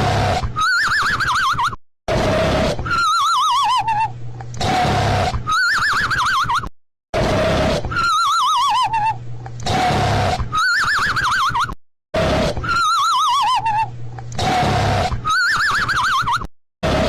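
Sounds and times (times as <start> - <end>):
cartoon snoring with whistle: 0.0 - 1.4, 2.1 - 4.0, 4.6 - 6.3, 7.2 - 9.0, 9.6 - 11.5, 12.2 - 17.0.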